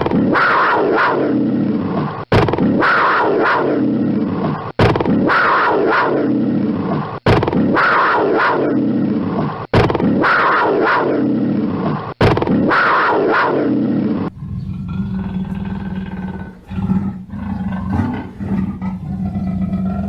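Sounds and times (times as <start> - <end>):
panther calling: 14.3 - 20.0.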